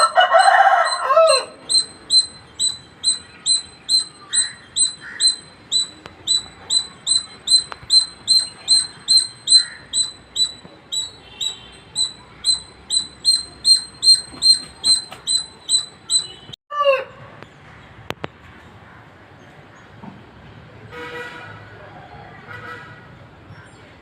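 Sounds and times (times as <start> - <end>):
squirrel chirping: 0.0 - 16.5
squirrel squeak: 0.0 - 16.5.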